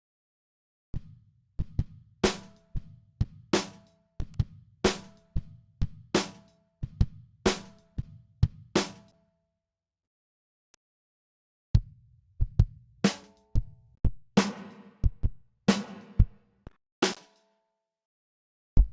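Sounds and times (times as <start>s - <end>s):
kick and snare drum groove: 1.0s - 9.1s, 11.8s - 16.4s.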